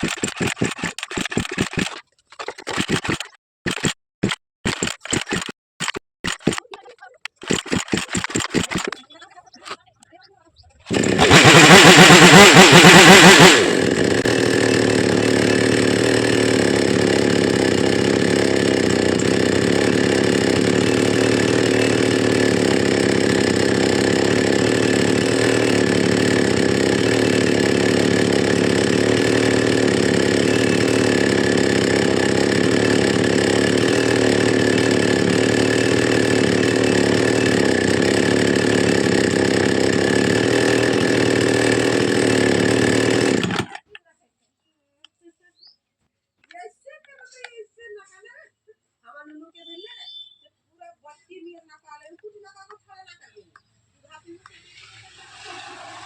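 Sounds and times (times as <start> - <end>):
chainsaw engine revving and idling: 0.0 - 9.8, 10.8 - 44.0, 55.2 - 56.0.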